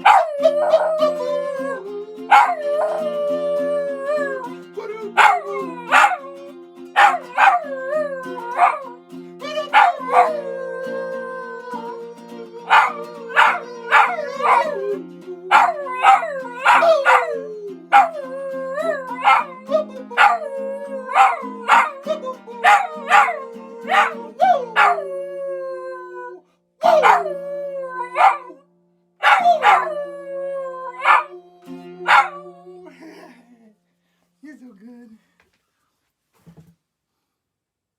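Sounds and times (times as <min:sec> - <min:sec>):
dog howling and yipping: 0:00.0 - 0:04.5, 0:05.2 - 0:11.0, 0:12.6 - 0:28.6, 0:29.2 - 0:31.4, 0:32.0 - 0:32.8.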